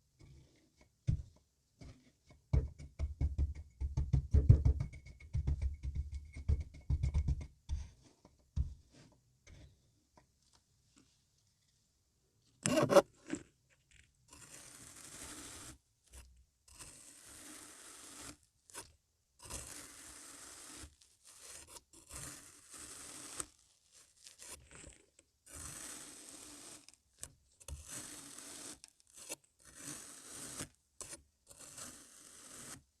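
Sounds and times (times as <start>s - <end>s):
blade scraping through sand: 14.3s - 15.8s, 16.7s - 18.8s, 19.4s - 26.9s, 27.7s - 32.8s.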